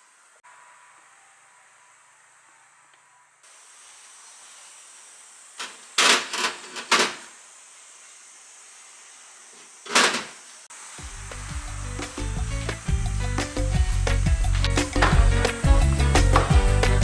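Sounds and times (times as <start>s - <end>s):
steady low hiss: 0.0s - 17.0s
kitchen scraping and rustling: 3.8s - 7.5s, 9.4s - 17.0s.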